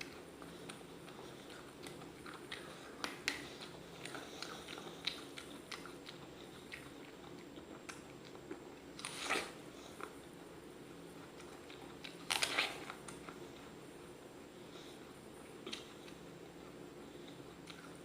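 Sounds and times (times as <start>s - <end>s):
apple chewing crunches: 0.0s - 10.5s, 11.1s - 13.5s.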